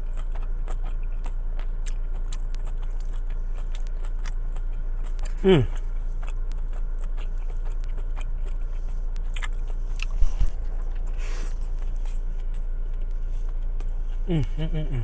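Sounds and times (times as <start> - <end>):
biting and chewing: 0.0 - 14.3
steady low hum: 0.0 - 15.0
low thumps: 10.0 - 12.4.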